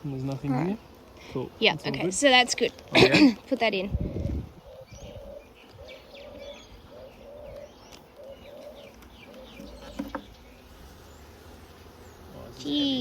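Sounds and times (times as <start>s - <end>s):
small birds chirping: 0.0s - 13.0s
dove cooing: 2.8s - 10.6s.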